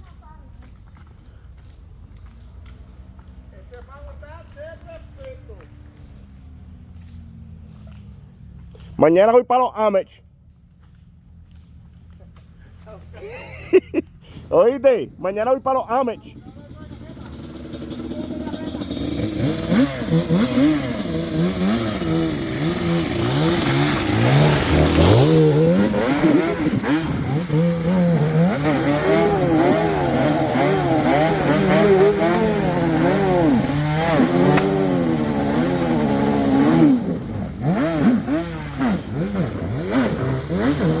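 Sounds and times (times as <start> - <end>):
atv engine revving: 12.4 - 41.0.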